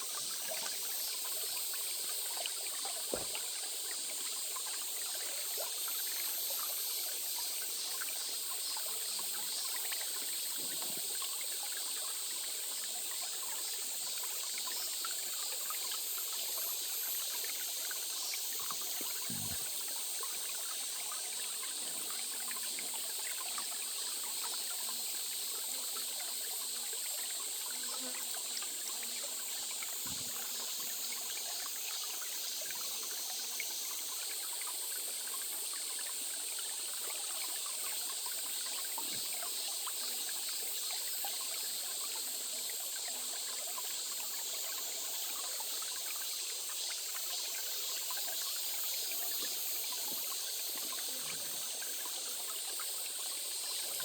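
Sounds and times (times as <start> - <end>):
stream trickling over stones: 0.0 - 54.0.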